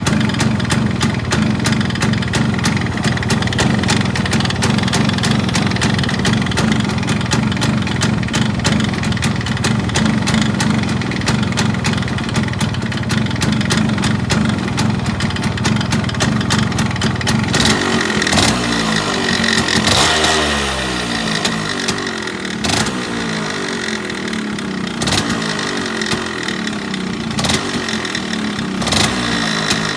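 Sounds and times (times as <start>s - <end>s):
fast rattling tick: 0.0s - 20.4s
motorcycle engine idling and revving: 0.0s - 29.9s.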